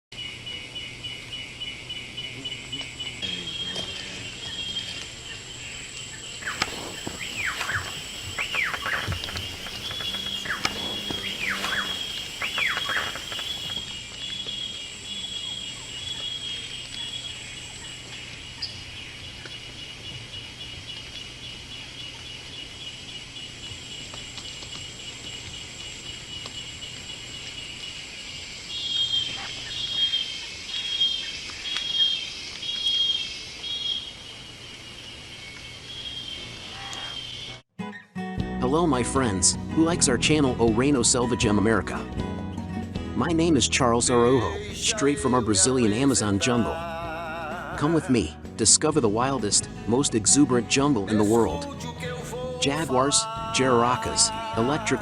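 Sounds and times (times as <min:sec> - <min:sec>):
high insect drone: 0:00.2 - 0:37.6
falling whistled bird calls: 0:00.2 - 0:38.0
loud repeated bird call: 0:00.2 - 0:38.0.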